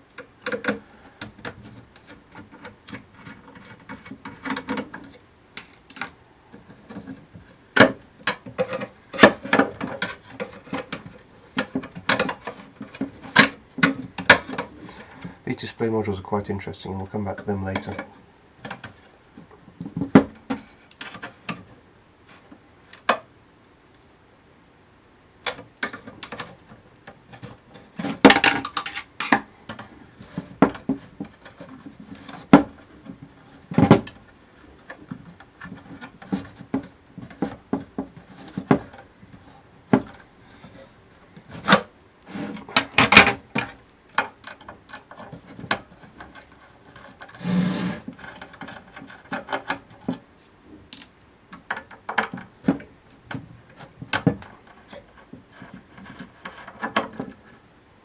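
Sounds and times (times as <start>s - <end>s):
clicks and clatter of parts: 0.1s - 15.4s, 25.4s - 34.2s, 34.8s - 47.4s, 48.0s - 50.3s
rubbing scrape: 40.4s - 42.8s, 45.2s - 49.4s.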